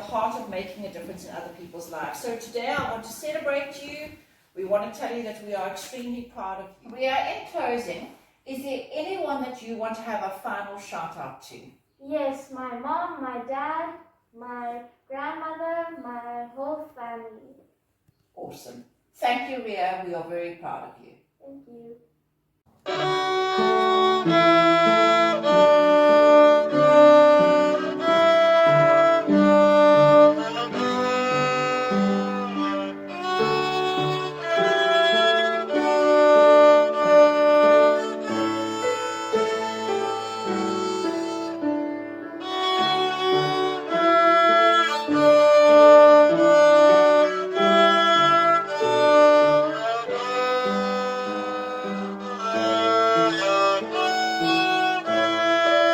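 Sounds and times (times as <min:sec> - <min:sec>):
violin-led string piece: 0:22.9 - 0:55.9.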